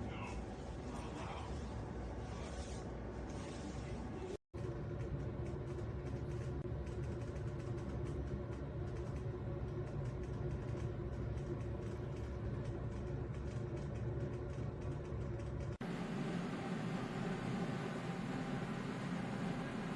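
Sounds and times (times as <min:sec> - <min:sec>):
food dehydrator fans humming: 0:04.2 - 0:19.9.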